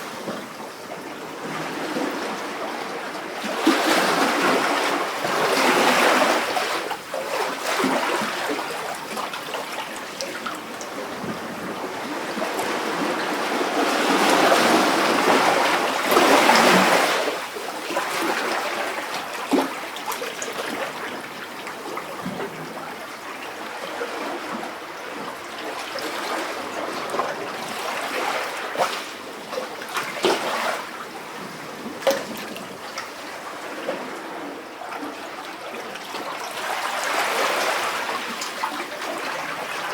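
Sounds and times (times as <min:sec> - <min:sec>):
sea waves sloshing in rocks: 0:01.2 - 0:19.8.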